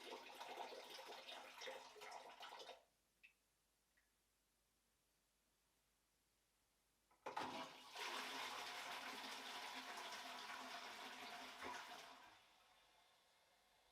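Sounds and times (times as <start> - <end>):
toilet flush water rushing: 0.0 - 2.7, 7.3 - 13.8.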